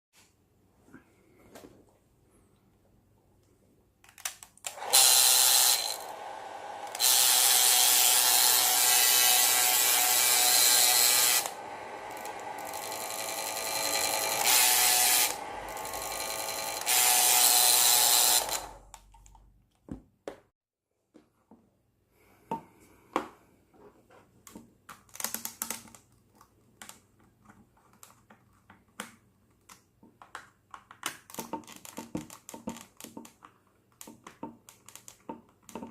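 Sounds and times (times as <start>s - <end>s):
hair dryer running noisily: 4.7s - 18.8s.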